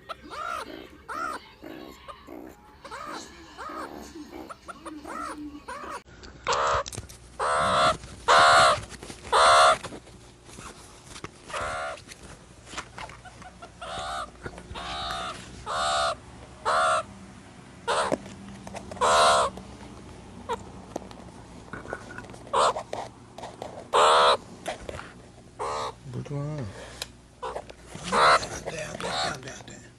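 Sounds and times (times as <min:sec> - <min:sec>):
meerkat calls: 0:00.0 - 0:09.9, 0:11.5 - 0:12.0, 0:13.2 - 0:17.1, 0:17.9 - 0:18.2, 0:19.0 - 0:19.5, 0:22.5 - 0:22.9, 0:23.9 - 0:24.4, 0:25.6 - 0:26.0, 0:27.4 - 0:29.4.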